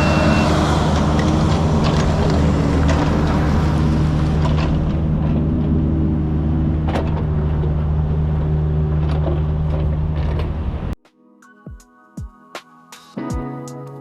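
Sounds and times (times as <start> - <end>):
excavator diesel engine running: 0.0 - 11.0.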